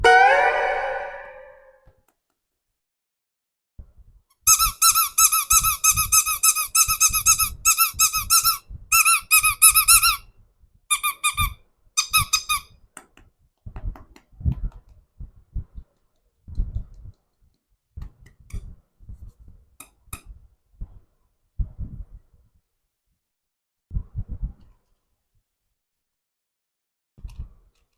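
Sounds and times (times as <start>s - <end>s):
squeaky toy squeaking: 4.4s - 10.2s, 10.9s - 12.7s.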